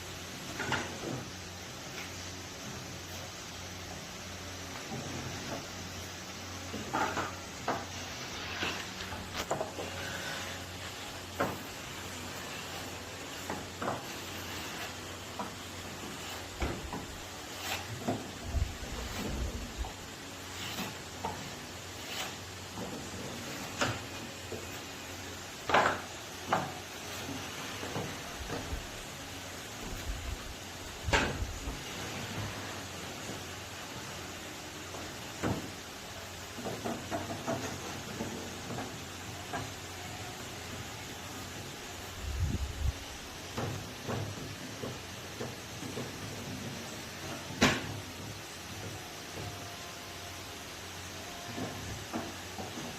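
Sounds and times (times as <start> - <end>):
steady hiss: 0.0 - 52.9
wood and tools knocking: 36.6 - 39.8.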